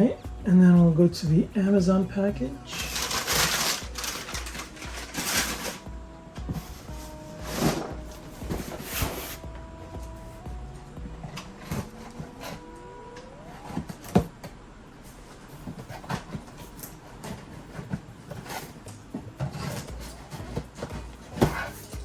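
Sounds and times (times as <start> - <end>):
cardboard box rustling and scraping: 2.7 - 10.4, 11.2 - 12.7, 15.1 - 22.0.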